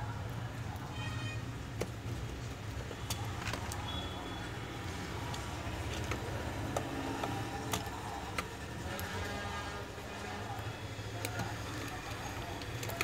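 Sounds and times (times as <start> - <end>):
plastic parts clicking and tapping: 1.7 - 4.0, 5.2 - 9.1, 11.1 - 13.0.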